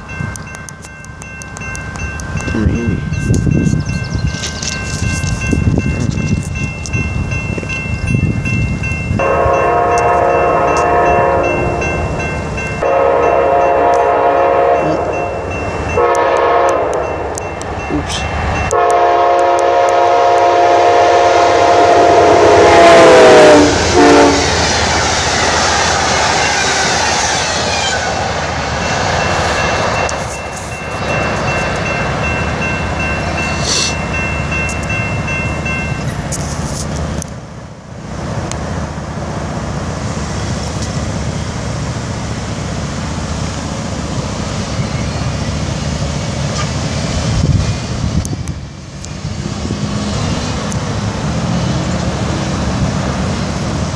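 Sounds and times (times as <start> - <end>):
train rolling on rails: 0.0 - 53.9
locomotive air horn: 9.2 - 11.8, 12.8 - 15.2, 16.0 - 17.1, 18.7 - 24.7.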